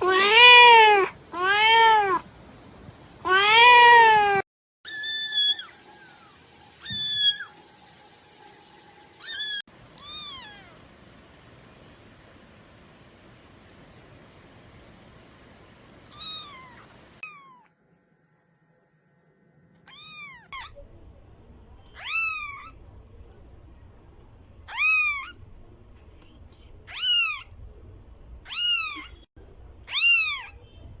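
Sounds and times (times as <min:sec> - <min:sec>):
kitten meowing: 0:00.0 - 0:02.2, 0:06.8 - 0:07.5, 0:09.2 - 0:10.7, 0:16.1 - 0:17.7, 0:22.0 - 0:22.7, 0:24.7 - 0:25.4, 0:26.9 - 0:27.5, 0:28.5 - 0:29.2, 0:29.9 - 0:30.6.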